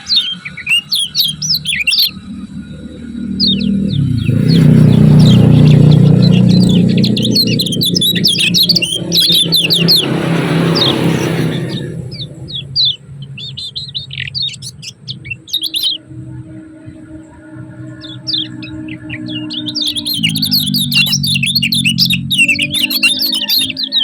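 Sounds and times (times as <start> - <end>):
white-eye high rapid chirps: 0.0 - 16.0, 17.9 - 24.0
loud low rumble: 1.4 - 13.0.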